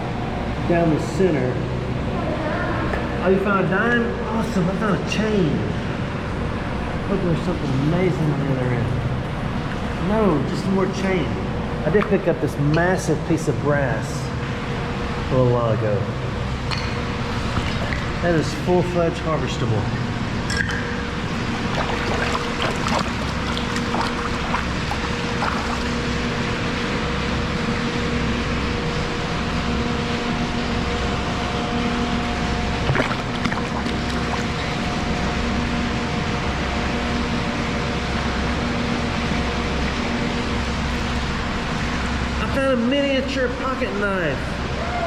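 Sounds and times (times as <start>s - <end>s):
creek water rushing: 21.3s - 26.4s, 32.8s - 35.3s.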